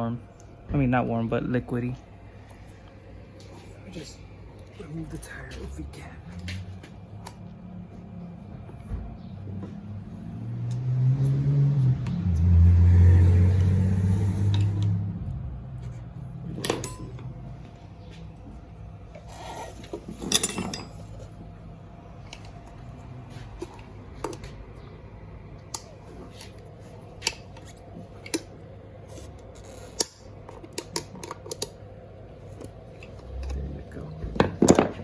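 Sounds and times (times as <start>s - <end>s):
loud low hum: 0.0s - 30.4s.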